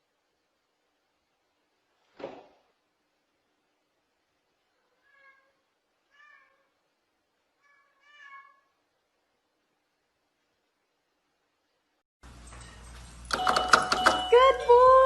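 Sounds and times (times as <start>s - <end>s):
cat meowing faintly: 4.7s - 6.8s, 7.6s - 8.8s.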